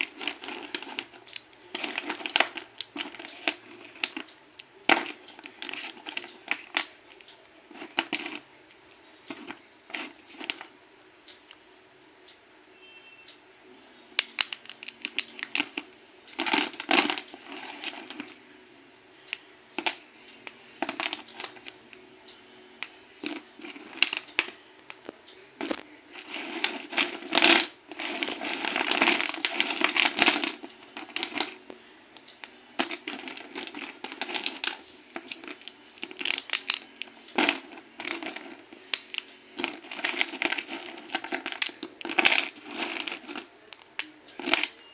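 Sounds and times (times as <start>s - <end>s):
dry clay cracking and crunching: 14.2s - 15.8s, 32.9s - 44.7s.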